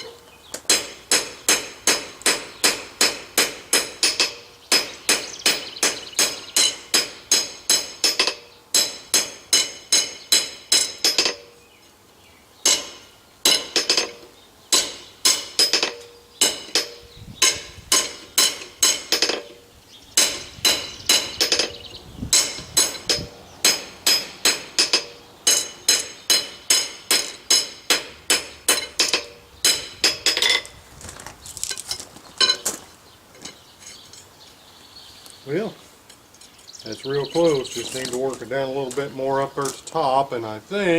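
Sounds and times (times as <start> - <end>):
hammer striking steel on anvil: 0.7 - 11.6, 12.6 - 19.6, 20.2 - 30.6.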